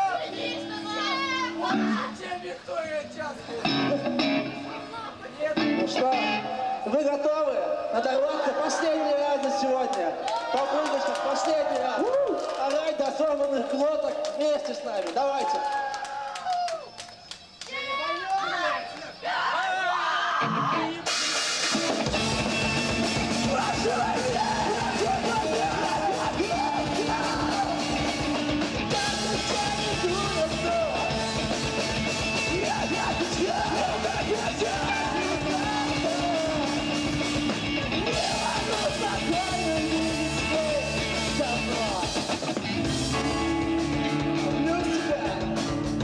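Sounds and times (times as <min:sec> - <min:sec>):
rock band playing: 0:00.0 - 0:02.2, 0:03.4 - 0:06.6, 0:20.4 - 0:46.0
sung and shouted vocals: 0:17.7 - 0:21.4, 0:23.2 - 0:31.2, 0:32.3 - 0:37.2, 0:37.9 - 0:42.2.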